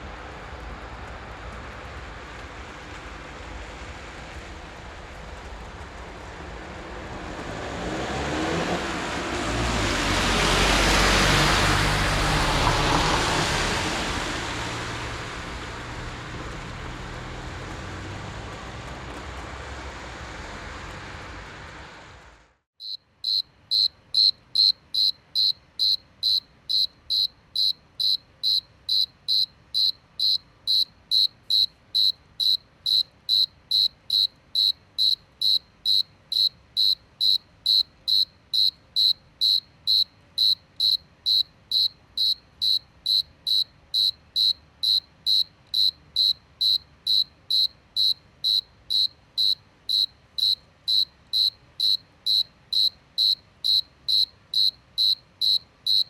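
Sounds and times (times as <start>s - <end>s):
vehicle passing by: 0.0s - 22.6s
cricket chirping: 22.8s - 56.0s.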